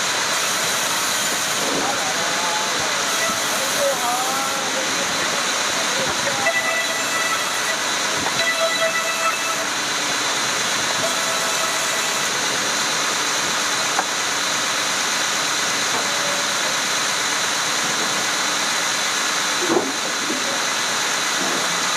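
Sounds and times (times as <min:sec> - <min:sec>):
woodworking machinery hiss: 0:00.0 - 0:14.8.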